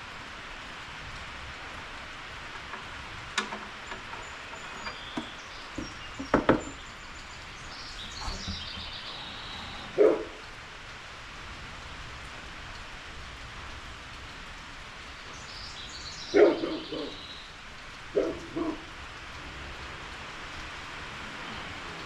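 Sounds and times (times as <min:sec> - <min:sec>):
steady rain hissing: 0:00.0 - 0:22.0
bird chirping: 0:03.8 - 0:10.2, 0:15.3 - 0:17.5
dog barking: 0:09.9 - 0:10.4, 0:16.3 - 0:17.2, 0:18.1 - 0:18.9.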